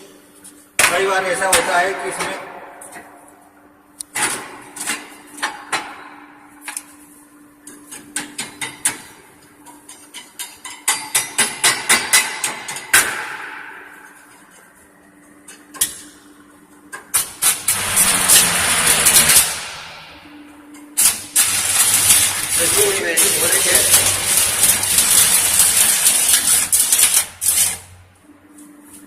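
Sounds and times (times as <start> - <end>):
steady low hum: 0.0 - 29.0
welding arc snaps and crackles: 17.0 - 19.9, 21.0 - 28.0.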